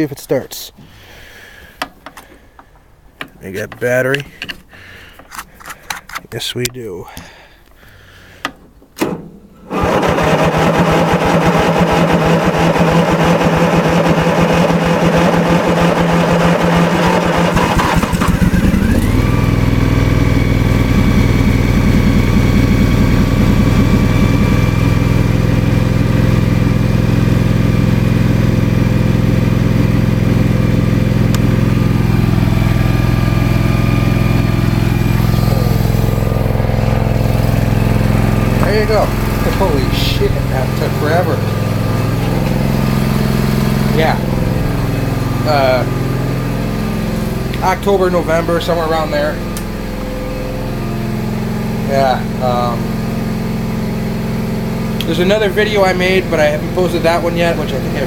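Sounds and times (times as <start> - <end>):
starter click: 1.8 - 7.3
starter motor cranking: 9.0 - 25.7, 30.2 - 46.1
lawn tractor engine running: 9.0 - 58.0.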